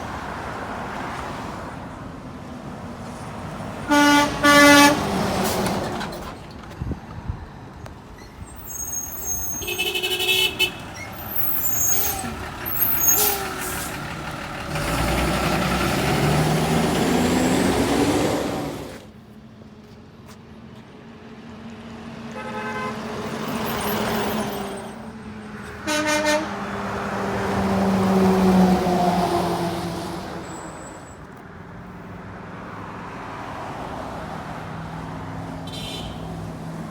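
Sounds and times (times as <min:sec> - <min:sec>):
trucks passing on road: 0:00.0 - 0:36.9
truck horn toots: 0:03.9 - 0:05.3, 0:09.3 - 0:13.9, 0:22.4 - 0:23.1, 0:25.8 - 0:26.8, 0:35.7 - 0:36.3.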